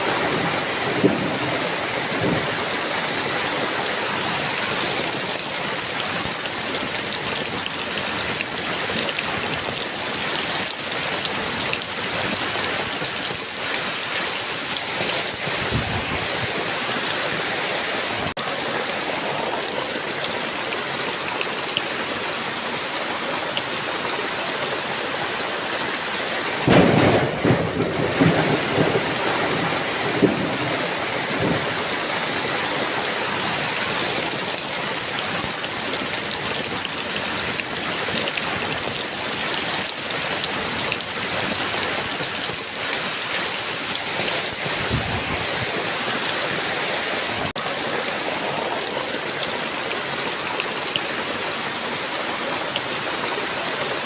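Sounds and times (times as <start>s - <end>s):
heavy rain: 0.0s - 54.0s
thunder rumbling: 26.6s - 32.0s.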